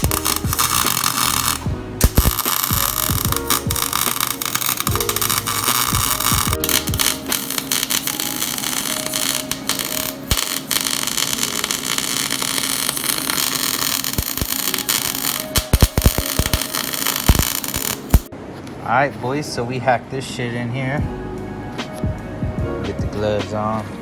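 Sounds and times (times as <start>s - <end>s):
arc welder crackling and hissing: 0.0s - 18.3s
sharp welding pops: 0.0s - 18.3s.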